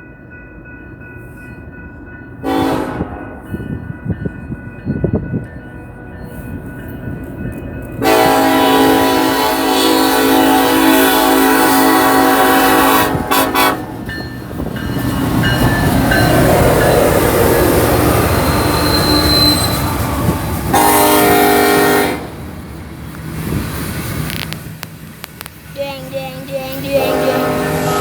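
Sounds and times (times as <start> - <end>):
train rumbling past: 0.0 - 28.0
locomotive air horn: 2.4 - 3.2, 8.0 - 14.0, 20.7 - 22.4, 27.0 - 28.0
wheel squeal: 18.4 - 20.0.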